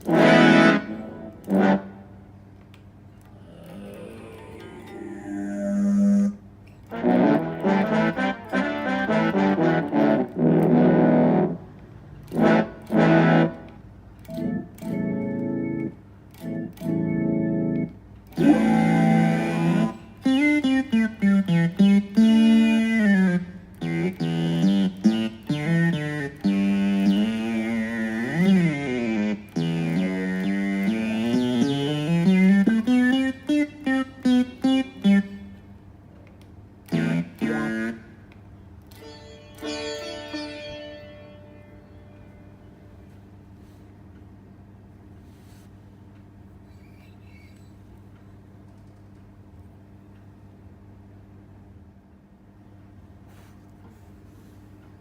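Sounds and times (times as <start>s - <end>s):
distorted guitar synthesizer notes: 0.0s - 2.0s, 3.3s - 11.6s, 12.3s - 35.6s, 36.8s - 43.2s.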